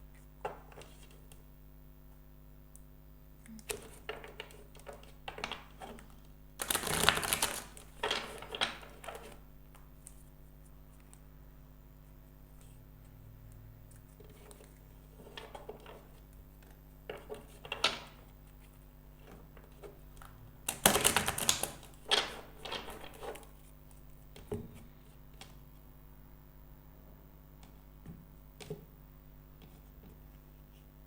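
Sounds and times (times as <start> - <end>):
cards being shuffled: 3.6 - 9.4.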